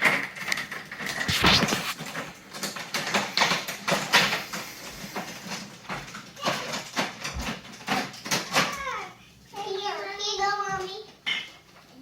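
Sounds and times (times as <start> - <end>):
clicks and light knocks of handling: 0.0 - 8.9
rustling of artificial branches: 0.0 - 12.0.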